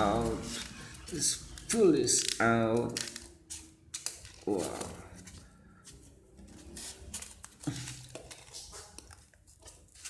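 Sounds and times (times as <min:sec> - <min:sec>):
plastic parts clicking and tapping: 0:00.5 - 0:03.3.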